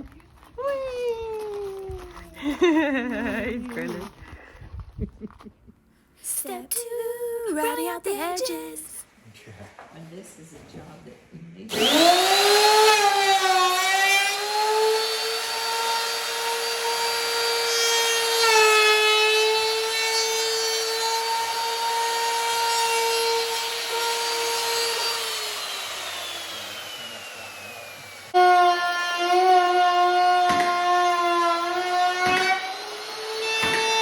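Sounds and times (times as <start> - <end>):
wood router motor whining: 11.7 - 34.0.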